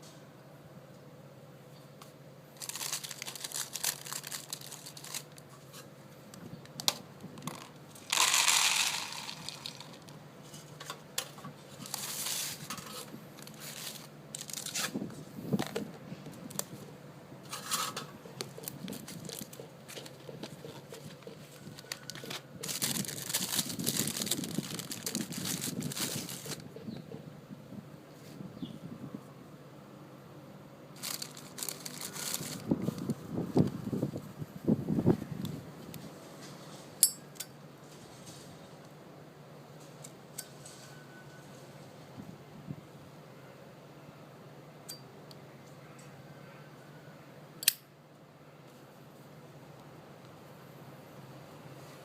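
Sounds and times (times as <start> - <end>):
crinkling and rustling handling: 1.9 - 16.9, 17.5 - 27.2, 31.0 - 34.3.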